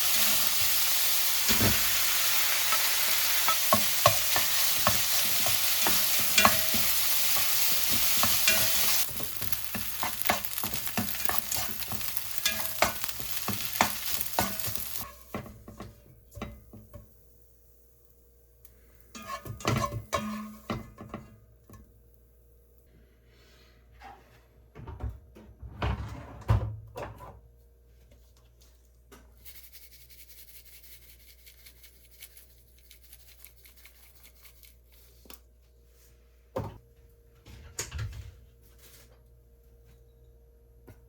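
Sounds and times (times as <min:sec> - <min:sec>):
utensils and containers clattering: 0:01.4 - 0:15.5.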